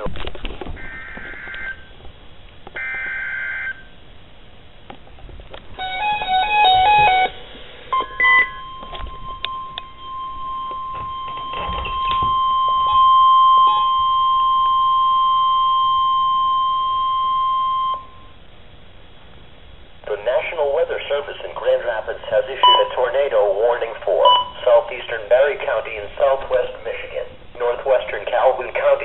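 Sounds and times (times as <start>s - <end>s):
steady warning alarm tone: 0.8s - 2.0s, 2.8s - 4.0s, 5.8s - 18.7s, 20.8s - 29.0s
warbling data tones: 5.8s - 18.4s
stepped electronic beeps: 8.0s - 18.3s, 22.6s - 23.0s, 24.2s - 24.8s.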